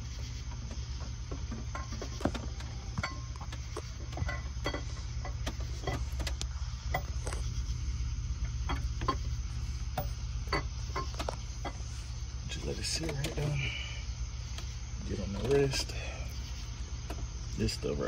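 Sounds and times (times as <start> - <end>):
steady low hum: 0.0 - 18.0
metal tapping on metal: 1.4 - 7.4, 8.6 - 11.9.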